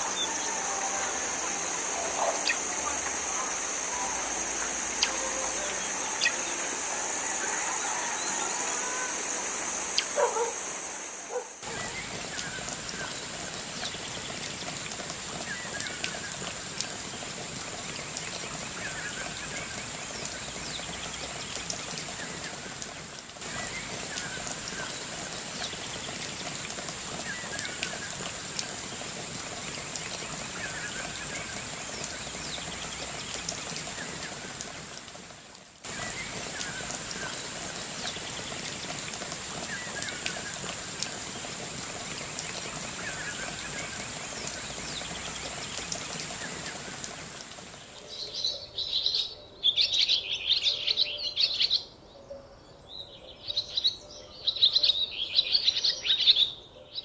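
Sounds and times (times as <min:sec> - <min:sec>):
high-pitched insect drone: 0:00.0 - 0:12.0
water dripping: 0:00.0 - 0:48.1.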